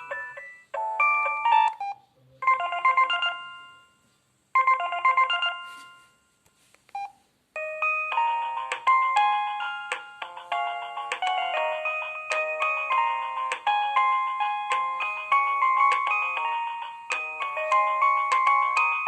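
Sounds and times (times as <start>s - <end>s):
synthesized phone ringtones: 0.0s - 6.3s.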